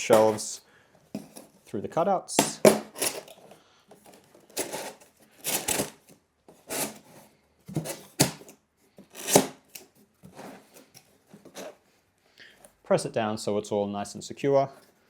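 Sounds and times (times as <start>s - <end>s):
cardboard scraping and rubbing: 0.0s - 0.6s, 2.6s - 11.8s.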